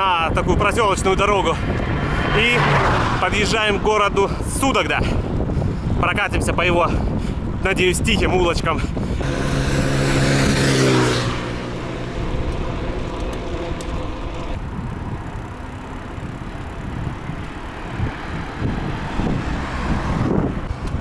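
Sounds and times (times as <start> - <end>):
wind and road noise: 0.0 - 21.0
car passing by: 1.4 - 4.5, 9.2 - 14.6, 17.8 - 21.0.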